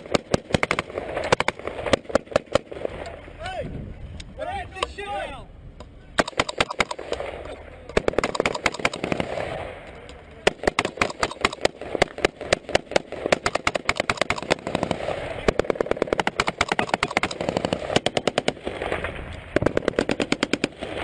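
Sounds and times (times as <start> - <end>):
automatic gunfire bursts: 6.2 - 7.3, 8.0 - 9.6, 10.5 - 18.9, 19.6 - 21.0.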